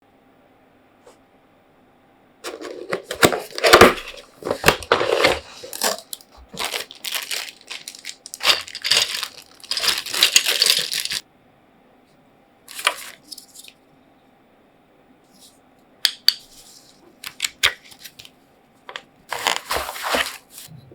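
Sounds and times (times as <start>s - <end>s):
packaging crinkling and tearing: 2.4s - 11.2s, 12.7s - 13.7s, 17.2s - 18.3s, 19.3s - 20.7s.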